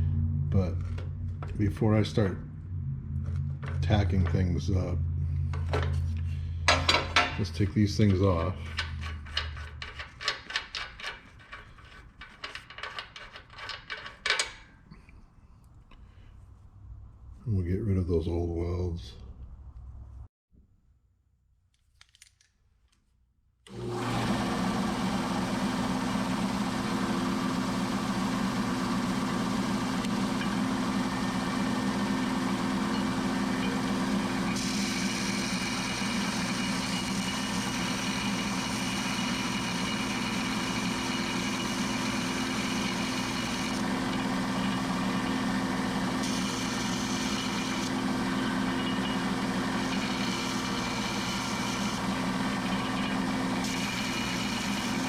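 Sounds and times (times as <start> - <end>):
welding machine engine running: 23.7 - 55.0.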